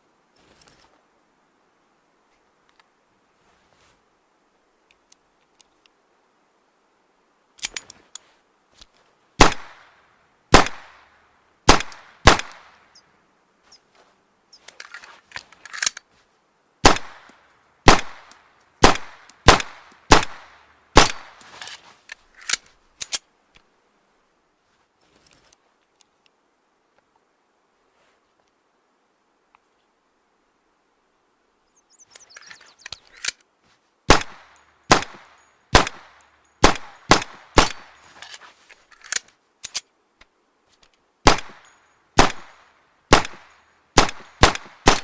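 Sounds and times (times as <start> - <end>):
gunshot cracks: 34.1 - 37.9, 42.2 - 45.0.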